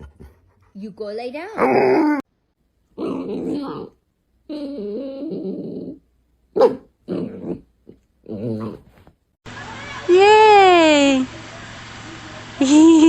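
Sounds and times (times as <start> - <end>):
dog grumbling and whining: 1.5 - 2.3, 3.0 - 6.1, 7.0 - 9.1.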